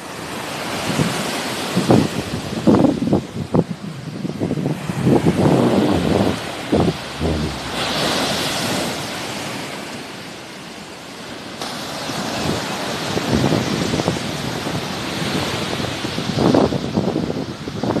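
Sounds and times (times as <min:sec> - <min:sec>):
wind gusting on microphone: 0:01.9 - 0:09.0.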